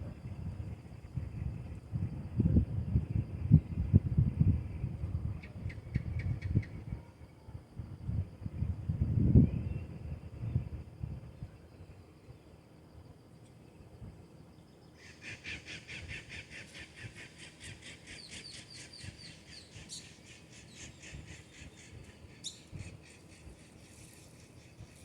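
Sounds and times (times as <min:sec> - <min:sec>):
bird chattering call: 0:15.0 - 0:24.0.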